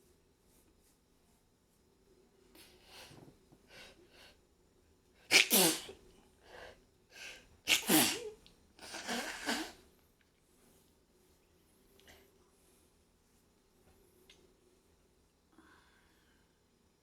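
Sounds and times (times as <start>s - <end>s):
person sneezing: 5.3s - 6.0s, 7.7s - 9.8s.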